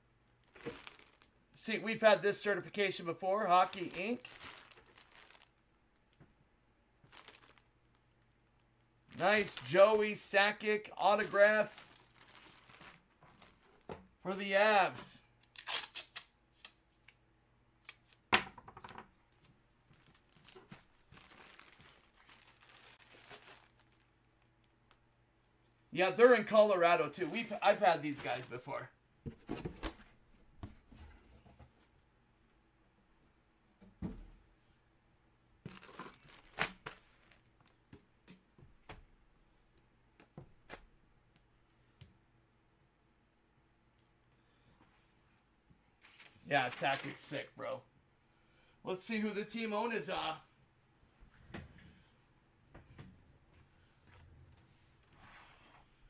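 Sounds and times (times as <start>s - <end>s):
plastic and paper crinkling: 0.3s - 1.3s, 3.4s - 6.2s, 7.0s - 13.9s, 19.3s - 25.0s, 26.5s - 28.7s, 35.7s - 37.9s, 46.0s - 47.4s
packaging being torn: 15.4s - 16.8s.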